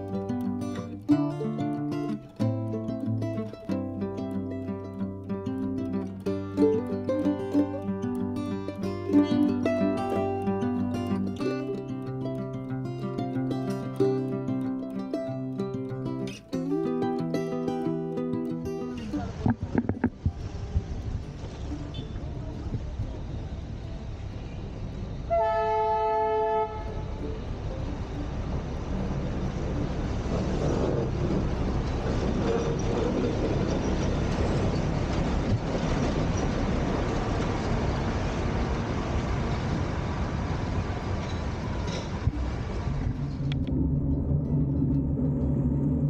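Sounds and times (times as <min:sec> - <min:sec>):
train running: 0:18.9 - 0:46.0
train horn blast: 0:25.3 - 0:27.2.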